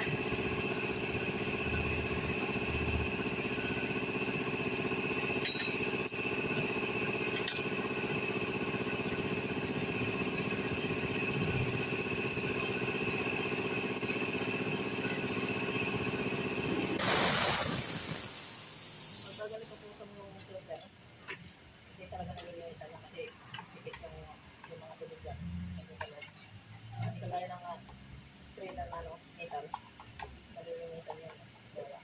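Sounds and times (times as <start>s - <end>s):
loud hiss: 17.0s - 19.9s.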